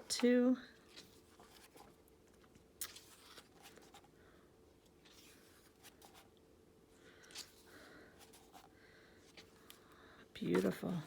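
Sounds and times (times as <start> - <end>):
paper pages rustling: 0.8 - 4.1.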